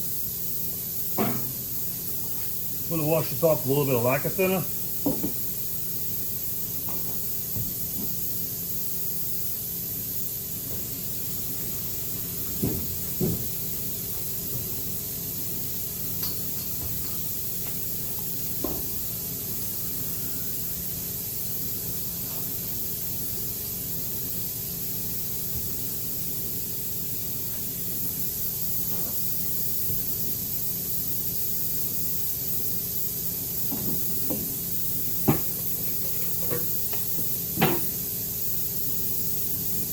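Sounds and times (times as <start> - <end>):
background hiss: 0.6 - 5.6.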